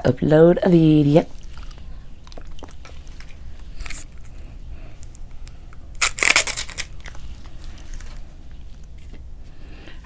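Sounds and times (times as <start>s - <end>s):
paper rustling and tearing: 6.0s - 8.3s.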